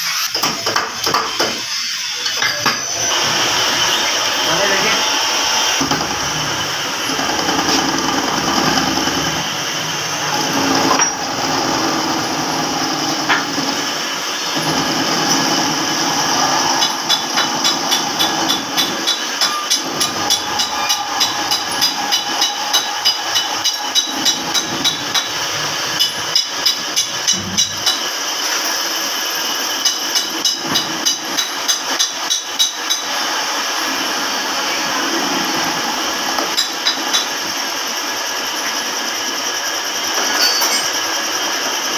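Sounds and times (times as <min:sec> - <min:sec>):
hammer striking metal: 0:16.8 - 0:28.0, 0:29.8 - 0:33.1, 0:36.6 - 0:37.3.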